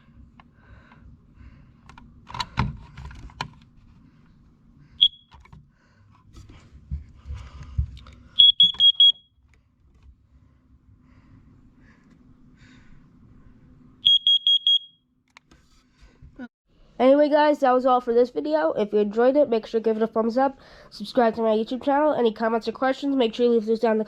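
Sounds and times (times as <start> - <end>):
high alarm beeps: 5.0 - 5.3, 8.4 - 9.3, 14.0 - 15.0.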